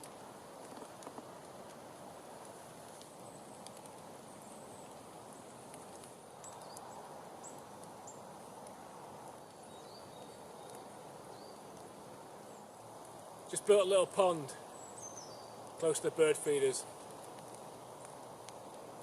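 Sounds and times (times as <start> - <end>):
background hiss: 0.0 - 19.0
small birds high thin calls: 14.2 - 16.7.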